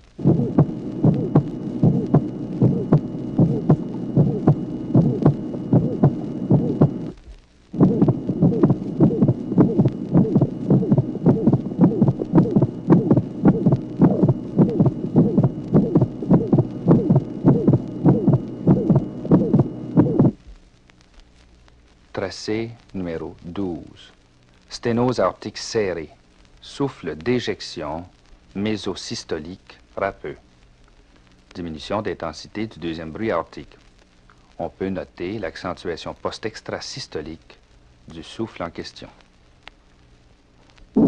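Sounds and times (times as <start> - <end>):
high-pitched heart murmur: 0.2 - 7.1, 7.8 - 20.4
human heartbeat: 0.2 - 7.1, 7.8 - 20.4.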